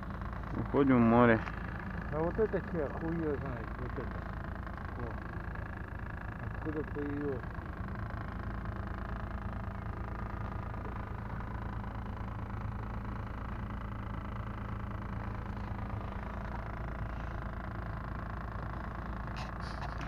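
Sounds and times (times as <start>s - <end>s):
ship engine drone: 0.0s - 20.0s.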